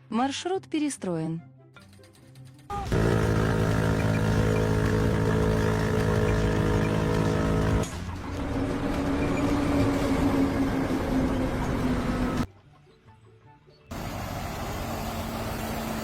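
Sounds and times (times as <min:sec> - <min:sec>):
engine running steadily: 0:02.8 - 0:10.0, 0:13.9 - 0:16.0
noisier engine rising in pitch: 0:02.8 - 0:12.5, 0:13.9 - 0:16.0.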